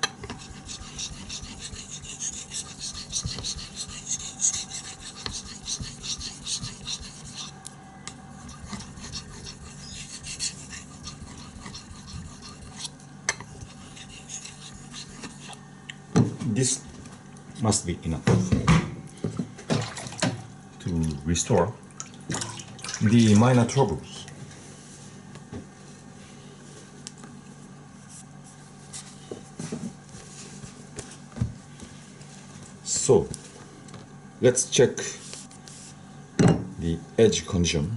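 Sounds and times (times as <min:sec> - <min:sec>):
knife scraping on whetstone: 0:00.3 - 0:07.6, 0:08.4 - 0:15.6.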